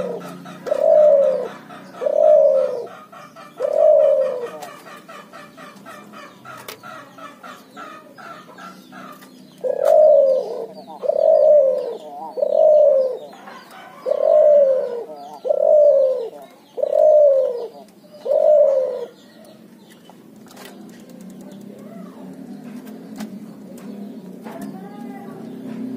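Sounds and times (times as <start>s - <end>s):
dove cooing: 0.0s - 19.8s
small birds chirping: 0.0s - 25.9s.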